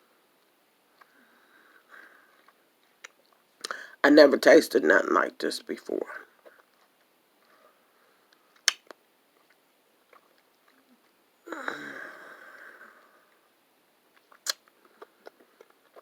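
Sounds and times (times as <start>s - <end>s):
chewing gummy: 6.3s - 7.5s, 8.5s - 11.2s, 14.1s - 16.0s
wet mouth clicks: 8.5s - 11.2s, 14.1s - 16.0s.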